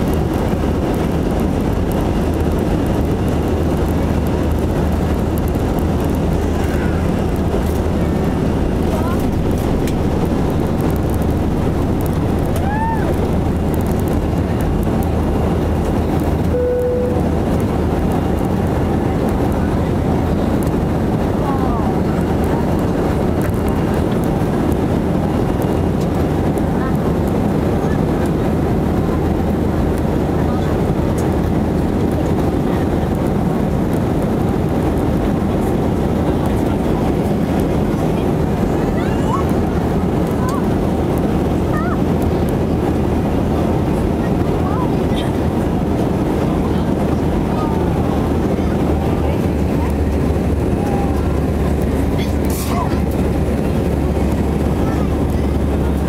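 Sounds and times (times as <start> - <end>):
jet engines running: 0.0 - 56.0
short steady tone: 16.5 - 17.4.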